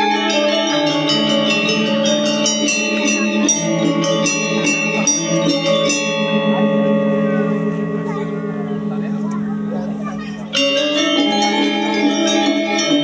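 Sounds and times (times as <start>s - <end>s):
metallophones struck quickly: 0.0s - 13.0s
pulsing low tones: 1.1s - 10.8s.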